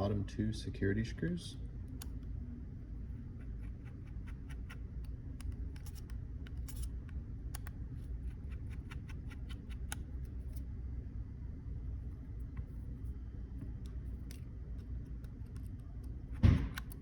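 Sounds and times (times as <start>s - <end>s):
steady low hum: 0.0s - 17.0s
screwdriver clicks and scratches: 3.4s - 10.6s, 13.7s - 17.0s.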